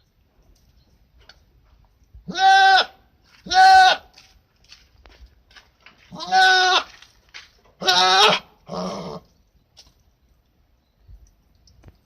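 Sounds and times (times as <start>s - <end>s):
goat bleating: 2.3s - 4.1s, 6.1s - 7.0s, 7.8s - 9.2s.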